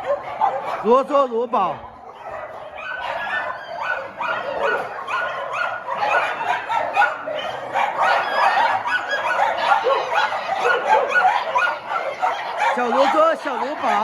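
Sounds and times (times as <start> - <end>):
dogs barking and yipping: 0.0 - 14.0.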